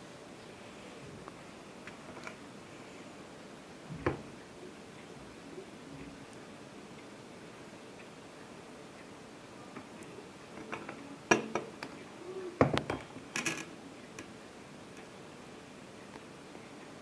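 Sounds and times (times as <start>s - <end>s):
crockery clicking and clinking: 12.6s - 13.7s.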